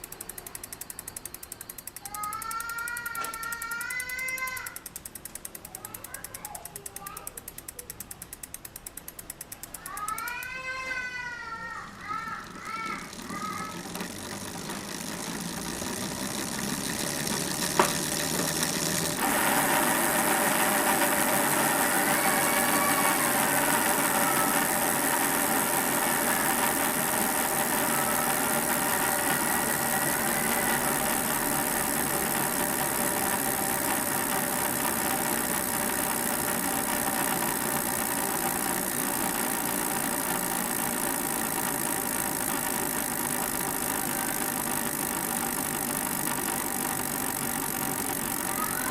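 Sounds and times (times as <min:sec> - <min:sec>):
sharp click: 0:00.0 - 0:10.6
bicycle freewheel buzzing: 0:00.0 - 0:48.9.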